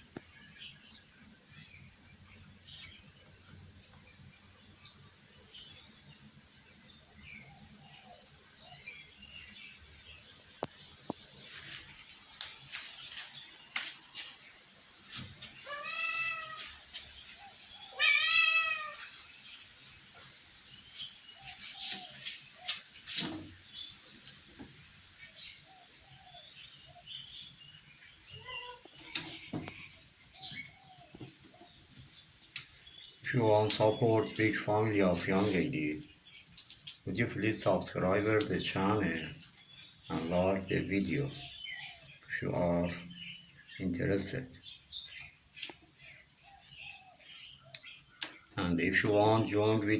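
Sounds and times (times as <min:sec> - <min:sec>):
crickets chirring: 0:00.0 - 0:49.9
cats meowing: 0:15.6 - 0:16.8, 0:17.9 - 0:19.1, 0:28.3 - 0:29.2.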